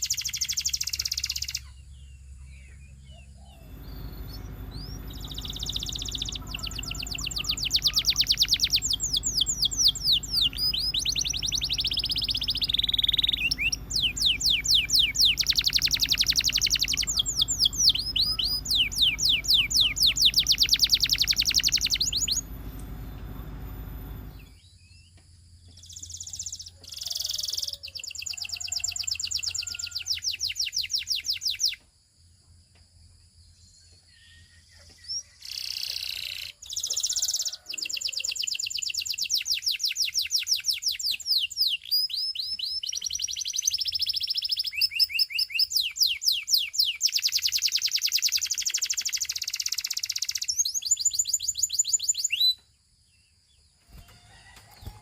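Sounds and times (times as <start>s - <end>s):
canary singing trills: 0.0s - 24.6s
low hum: 3.4s - 24.6s.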